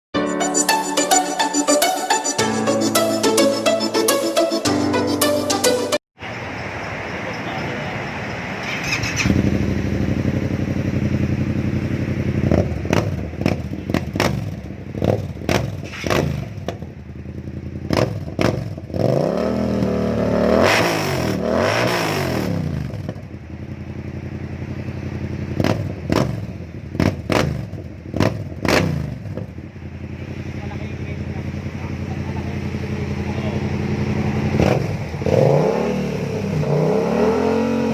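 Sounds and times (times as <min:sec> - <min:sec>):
motorcycle engine revving: 0:08.4 - 0:37.9.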